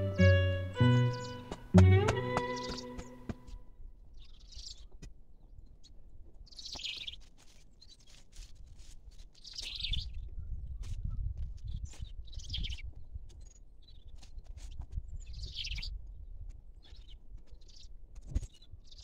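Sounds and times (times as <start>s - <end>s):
small bird chirping: 0.0s - 3.3s, 5.6s - 8.2s, 9.4s - 10.3s, 11.6s - 16.0s.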